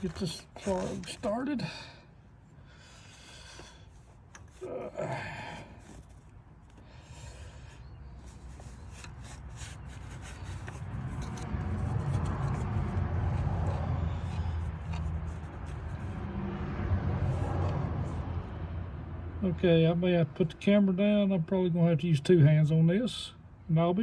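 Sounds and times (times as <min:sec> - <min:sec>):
rubbing and scraping handling noises: 0:00.0 - 0:01.6, 0:02.4 - 0:18.6.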